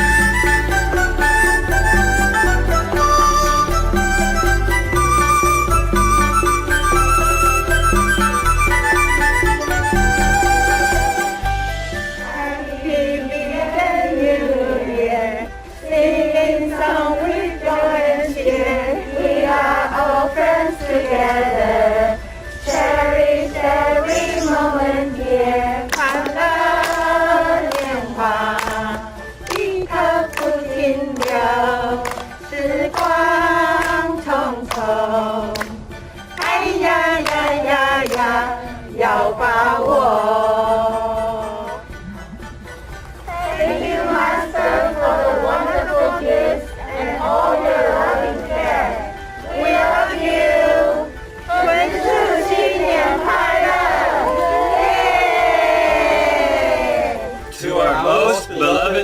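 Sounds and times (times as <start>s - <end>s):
choir singing: 12.2s - 35.8s, 36.4s - 41.8s, 43.3s - 59.0s.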